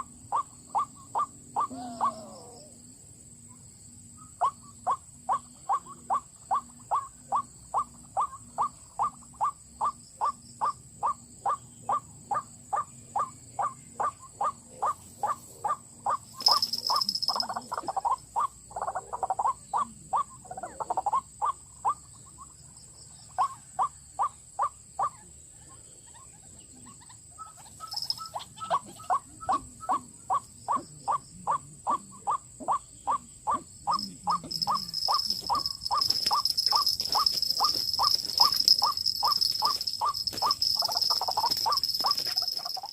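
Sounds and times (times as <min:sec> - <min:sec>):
harsh jumbled bird calls: 0:00.0 - 0:02.8, 0:03.4 - 0:42.9
waterhen calling: 0:33.9 - 0:42.9.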